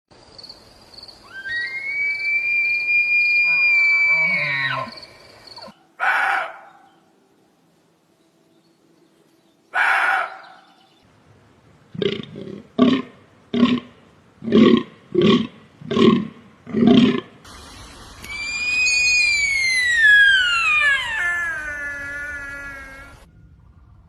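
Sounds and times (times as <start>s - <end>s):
deer whistle-like call: 1.3s - 4.9s, 18.2s - 23.3s.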